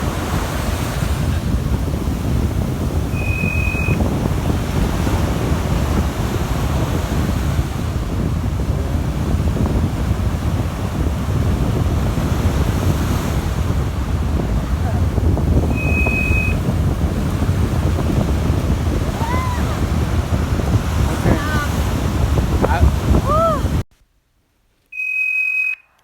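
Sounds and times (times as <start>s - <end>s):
wind buffeting microphone: 0.0s - 23.9s
short high tone: 3.2s - 4.0s.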